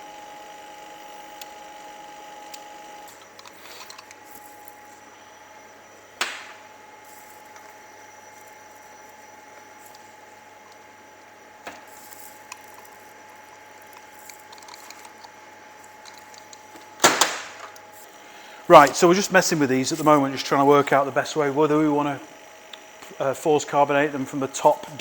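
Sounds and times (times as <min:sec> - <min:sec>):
steady background hum: 0:00.0 - 0:25.0
handling clicks and rustles: 0:03.0 - 0:05.0, 0:07.1 - 0:18.2.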